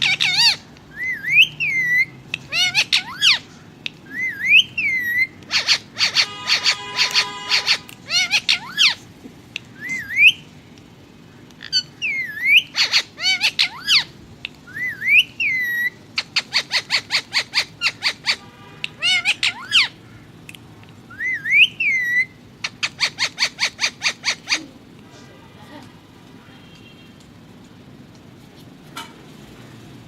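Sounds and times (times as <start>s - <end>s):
parakeet squawks: 0.0s - 3.5s, 4.1s - 9.0s, 11.6s - 20.3s, 21.1s - 24.7s
parakeet chattering calls: 0.0s - 10.6s, 11.4s - 20.5s, 21.1s - 24.9s
parakeet whistled notes: 4.1s - 9.0s.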